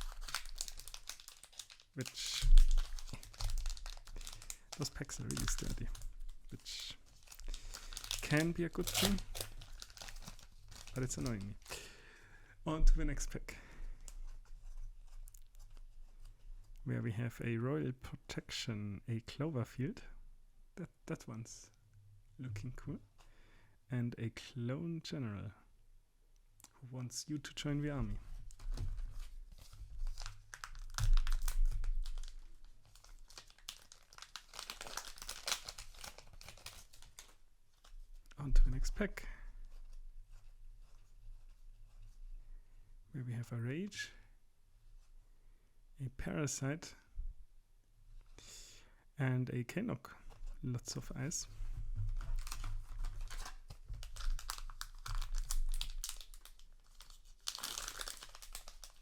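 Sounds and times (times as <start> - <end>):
foil wrapper crinkling and tearing: 0.0 - 11.8, 28.5 - 38.0, 52.2 - 59.0.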